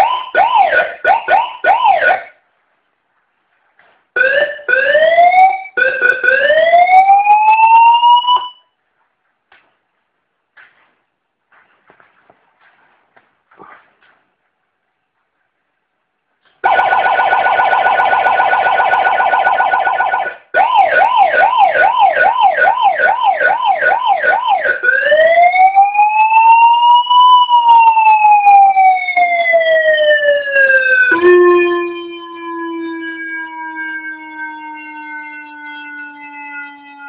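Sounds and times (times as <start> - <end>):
electronic police siren: 0.0 - 2.3, 4.2 - 8.7, 16.6 - 37.0
steady horn-like siren tone: 24.7 - 37.0.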